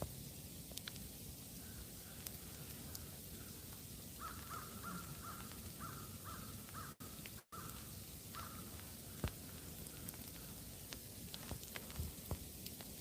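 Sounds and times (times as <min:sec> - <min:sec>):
bird calling: 0:04.2 - 0:09.6.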